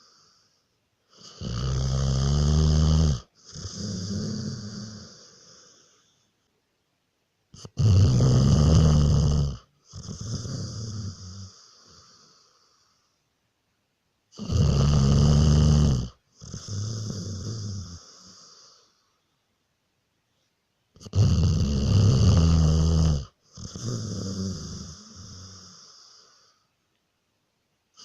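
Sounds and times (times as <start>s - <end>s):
person snoring: 1.1s - 6.0s, 7.6s - 12.9s, 14.4s - 19.0s, 21.0s - 26.6s.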